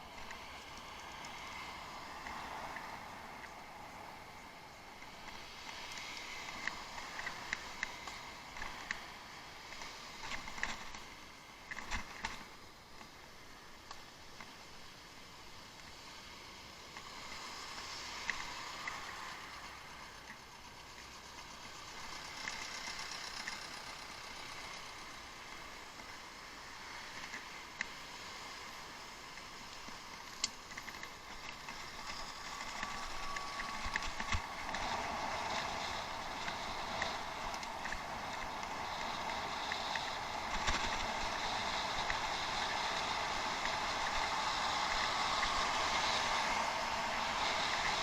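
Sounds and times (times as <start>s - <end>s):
bike clicks and rattles: 0.0s - 16.0s, 16.6s - 48.0s
tyre and wind noise: 25.4s - 48.0s.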